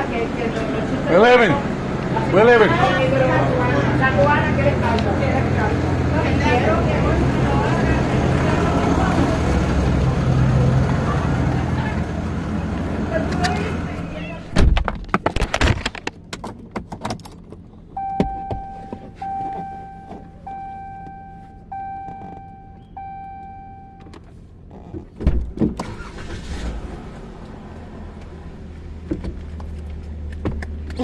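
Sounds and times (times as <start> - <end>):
low engine hum: 0.0 - 15.2, 16.0 - 31.0
car warning chime: 18.0 - 24.2
thump: 25.2 - 25.8.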